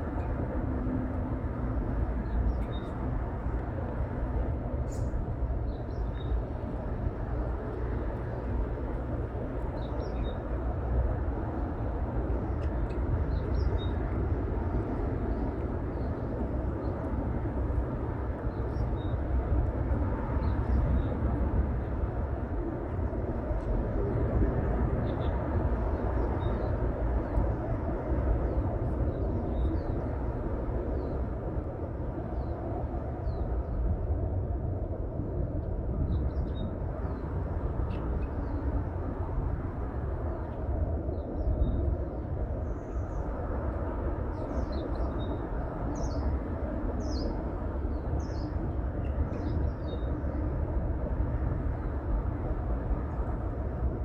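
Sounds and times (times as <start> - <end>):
low rumbling outdoor ambience: 0.0 - 54.0.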